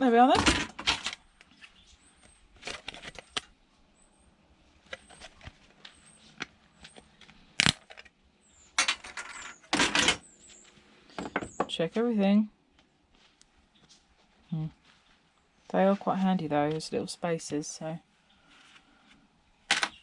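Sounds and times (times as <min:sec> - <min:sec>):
parts clattering: 0:00.3 - 0:01.2, 0:08.8 - 0:10.3, 0:11.1 - 0:11.7, 0:19.7 - 0:20.0.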